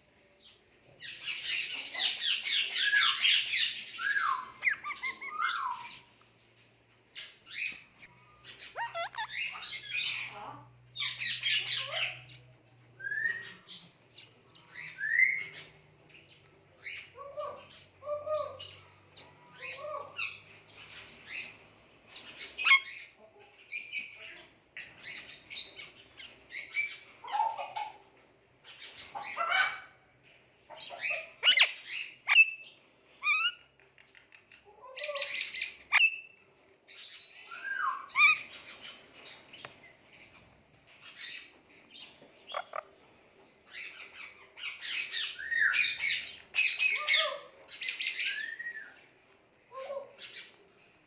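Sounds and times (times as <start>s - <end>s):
parrot squawking and chirping: 1.1s - 6.2s, 7.1s - 12.4s, 16.8s - 30.0s, 30.7s - 36.4s, 37.0s - 39.6s, 40.2s - 43.0s, 43.6s - 49.0s.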